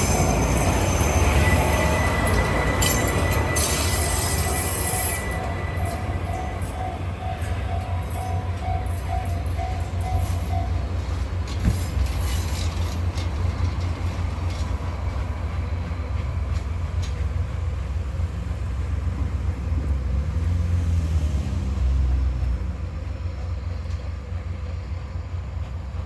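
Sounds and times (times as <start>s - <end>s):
level crossing bell dinging: 0.0s - 10.8s
train rumbling past: 0.0s - 26.0s.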